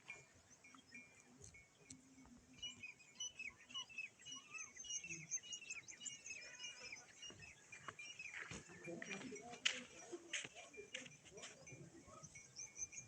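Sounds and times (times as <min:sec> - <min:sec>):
flock of small birds chirping: 0:00.0 - 0:13.0.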